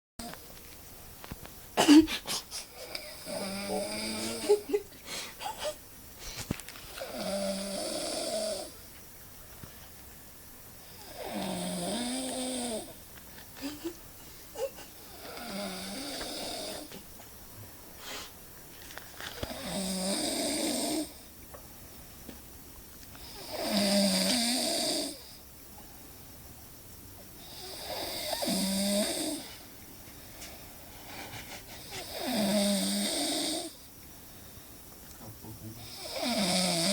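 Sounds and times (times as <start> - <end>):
quiet breathing: 2.2 - 17.0, 17.6 - 22.4, 27.4 - 36.9
man snoring: 2.7 - 4.7, 7.0 - 8.8, 10.8 - 13.0, 15.0 - 16.9, 19.5 - 21.2, 23.2 - 25.4, 27.4 - 29.6, 31.2 - 33.8, 35.7 - 36.9.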